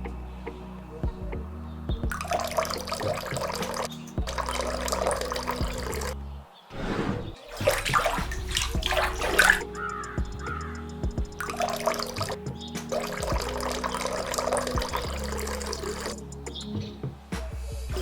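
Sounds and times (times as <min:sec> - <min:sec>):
background music: 0:00.0 - 0:18.0
water running and splashing: 0:02.0 - 0:06.2, 0:06.8 - 0:16.2.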